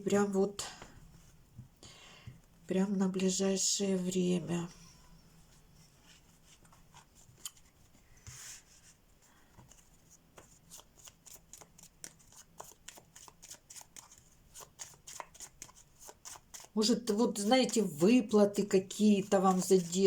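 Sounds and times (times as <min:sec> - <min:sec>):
playing cards being shuffled: 0:19.2 - 0:20.0.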